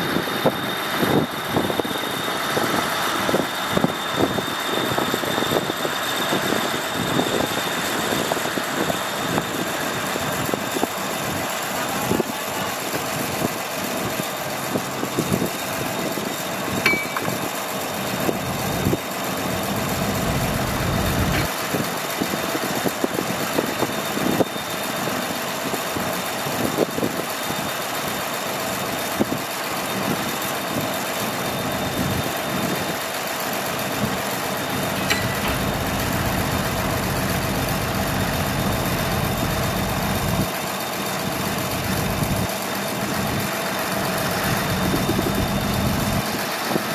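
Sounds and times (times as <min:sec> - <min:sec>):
diesel machinery running: 0:00.0 - 0:46.9
sharp metallic clanks: 0:16.8 - 0:17.6, 0:34.8 - 0:39.4.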